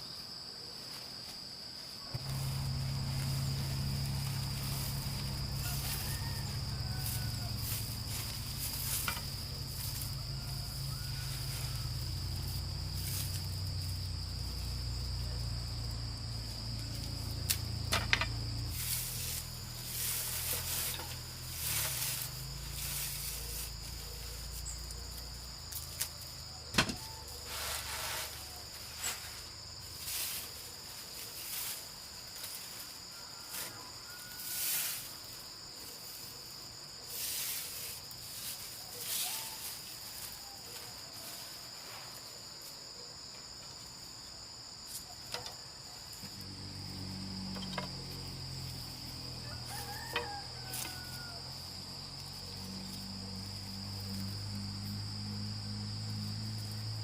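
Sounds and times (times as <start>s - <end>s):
crickets chirring: 0.0s - 57.0s
rustling or scraping noises: 0.8s - 13.9s, 16.9s - 42.9s, 47.3s - 54.4s
low rumble: 2.2s - 21.6s.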